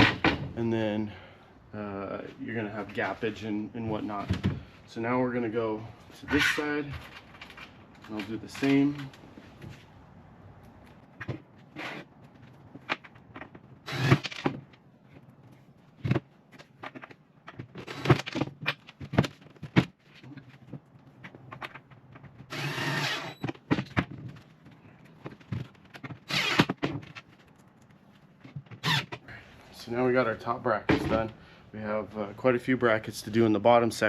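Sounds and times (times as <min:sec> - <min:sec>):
power drill driving screws: 0:13.9 - 0:14.4, 0:22.5 - 0:23.4, 0:26.3 - 0:26.8.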